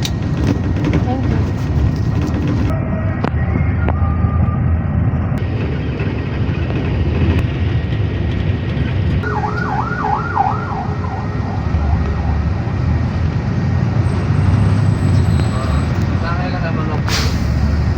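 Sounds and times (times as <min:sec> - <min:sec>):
bus rumbling on the road: 0:00.0 - 0:17.9
warbling siren: 0:09.2 - 0:15.3.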